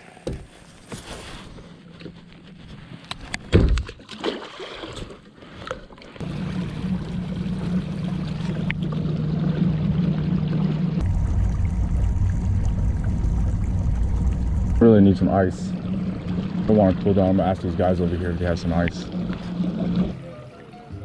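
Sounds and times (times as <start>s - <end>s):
water noise: 1.6s - 21.0s
electric boat motor humming: 6.2s - 21.0s.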